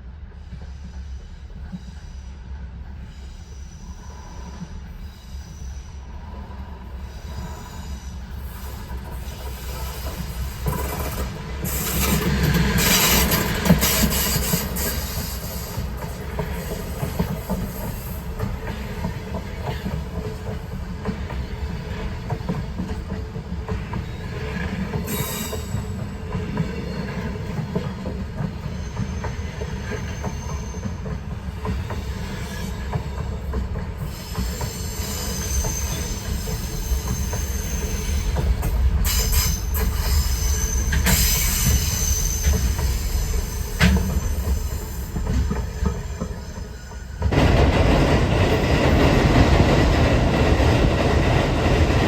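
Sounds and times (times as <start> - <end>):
train wheels rumbling on rails: 0.0 - 52.0
high wheel squeal: 25.1 - 26.0, 28.6 - 31.0, 34.0 - 47.2.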